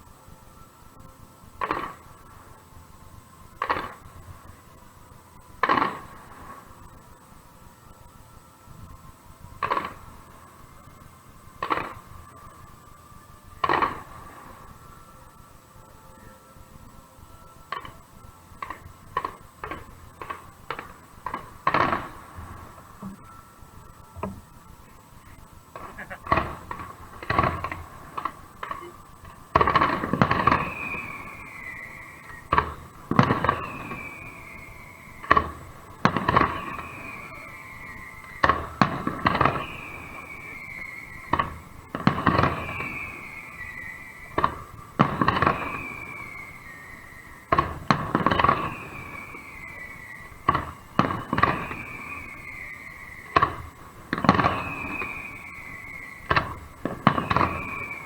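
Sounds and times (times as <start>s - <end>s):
fireworks bangs: 1.6s - 2.4s, 3.5s - 4.6s, 5.6s - 7.0s, 9.6s - 15.0s, 17.7s - 58.0s
falling whistle-like tone: 30.0s - 32.5s, 33.2s - 35.3s, 36.4s - 44.8s, 45.4s - 47.5s, 48.4s - 53.8s, 54.4s - 58.0s.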